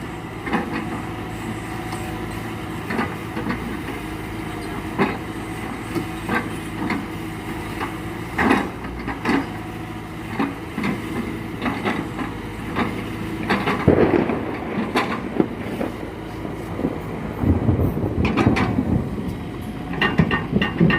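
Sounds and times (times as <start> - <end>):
excavator diesel engine running: 0.0 - 20.9.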